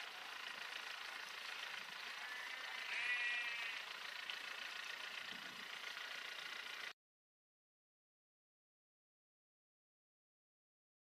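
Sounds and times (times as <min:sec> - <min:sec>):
sheep bleating: 0:02.0 - 0:03.9.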